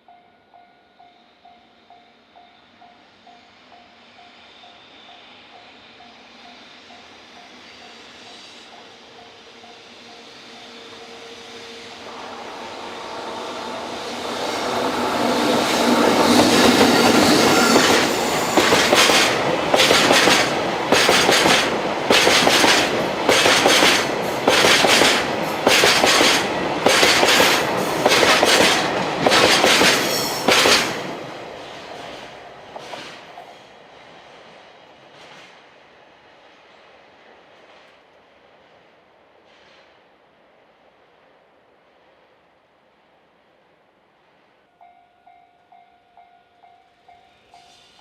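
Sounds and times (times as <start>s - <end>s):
freight train passing: 0.0s - 48.0s
wheels clacking over rail joints: 13.6s - 31.3s.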